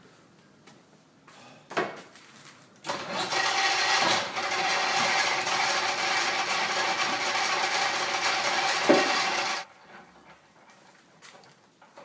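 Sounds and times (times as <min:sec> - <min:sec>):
lathe motor humming: 0:03.3 - 0:09.7.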